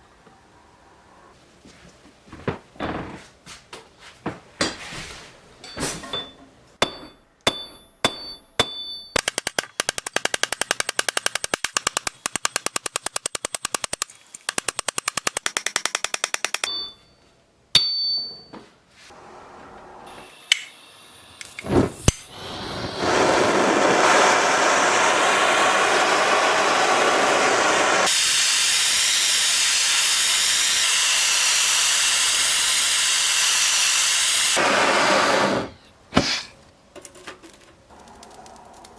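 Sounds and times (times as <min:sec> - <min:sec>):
hammer striking metal: 0:06.1 - 0:17.0, 0:17.8 - 0:18.5.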